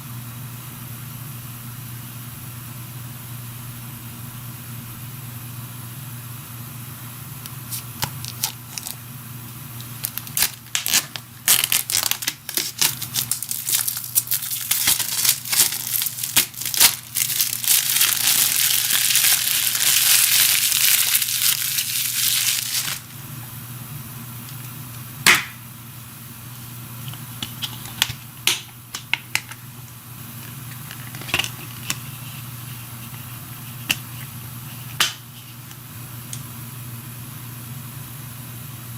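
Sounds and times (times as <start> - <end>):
steady low hum: 0.0 - 38.9
shrink-wrap tearing and crinkling: 7.7 - 9.0, 9.8 - 23.1.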